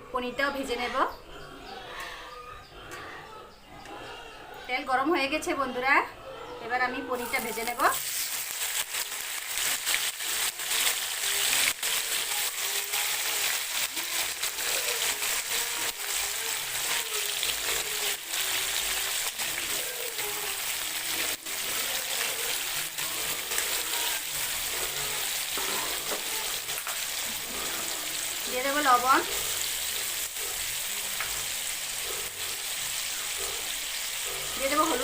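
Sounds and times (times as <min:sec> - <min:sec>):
cheese frying in hot oil: 0:07.2 - 0:35.0.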